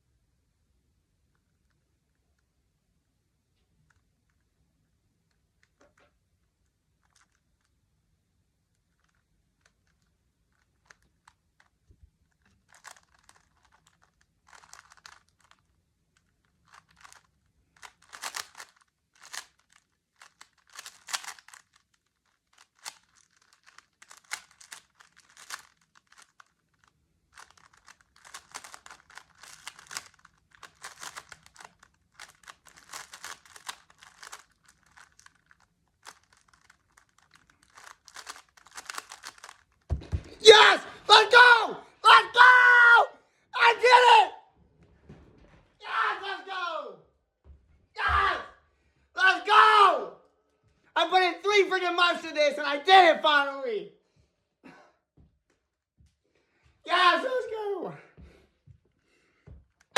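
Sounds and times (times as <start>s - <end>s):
plastic puzzle cube clicking: 7.0s - 7.7s, 8.8s - 39.9s.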